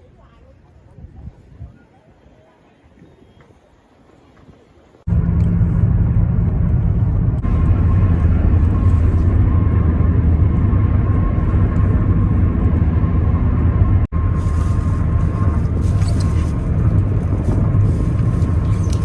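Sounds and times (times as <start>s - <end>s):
faint steady whine: 1.8s - 19.0s
car engine and road noise: 5.0s - 19.0s.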